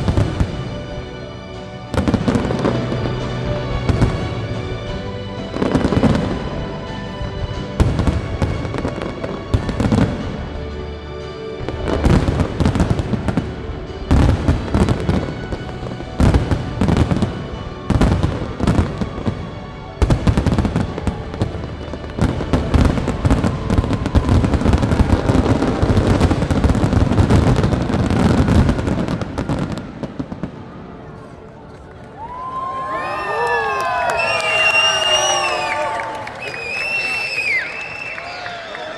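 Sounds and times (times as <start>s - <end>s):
fireworks bangs and crackles: 0.0s - 32.0s
music: 0.0s - 38.9s.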